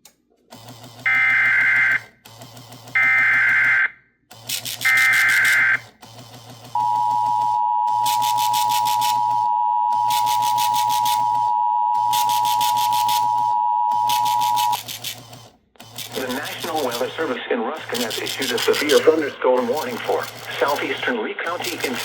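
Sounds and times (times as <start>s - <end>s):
piercing two-tone attention signal: 4.9s - 5.8s, 6.8s - 14.8s
screeching digital data bursts: 6.8s - 15.0s, 17.8s - 22.0s.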